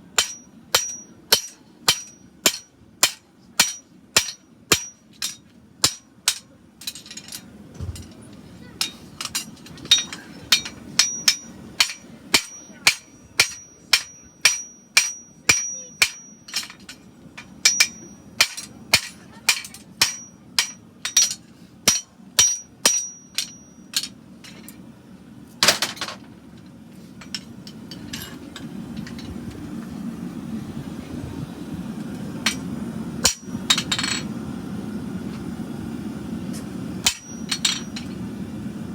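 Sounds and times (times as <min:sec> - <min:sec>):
steady low rumble: 0:00.0 - 0:38.9
hammer striking anvil ringing: 0:00.2 - 0:06.5, 0:08.8 - 0:16.9, 0:17.5 - 0:24.1, 0:33.2 - 0:34.2, 0:37.0 - 0:38.1.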